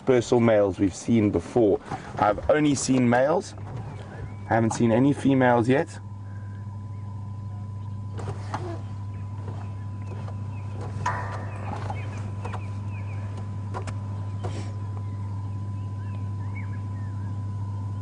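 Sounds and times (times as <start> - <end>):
faint bird chirps: 14.2 - 17.6.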